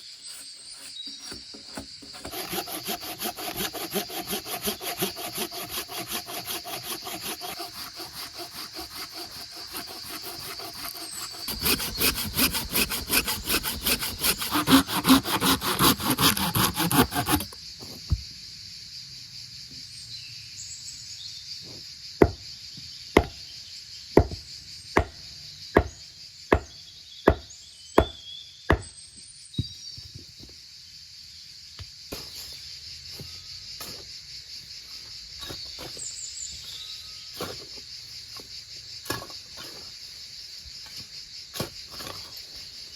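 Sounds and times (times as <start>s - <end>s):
hand saw cutting wood: 0.0s - 17.6s
insects chirring: 0.0s - 42.9s.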